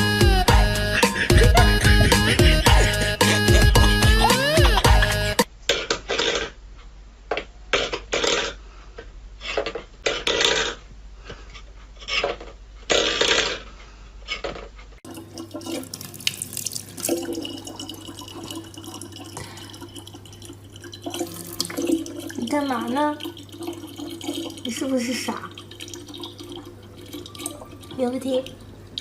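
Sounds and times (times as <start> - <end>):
water running from a tap: 15.0 - 29.0
water splashing: 15.0 - 29.0.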